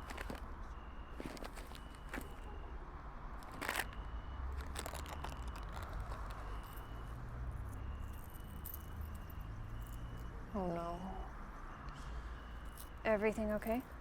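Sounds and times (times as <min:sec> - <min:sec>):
small crunching clicks: 0:00.0 - 0:00.5, 0:01.2 - 0:02.4, 0:03.4 - 0:06.8.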